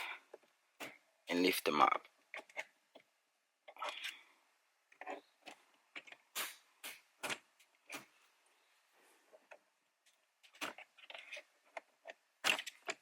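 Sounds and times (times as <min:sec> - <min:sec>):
plastic trim clicks and scrapes: 0:09.4 - 0:13.0.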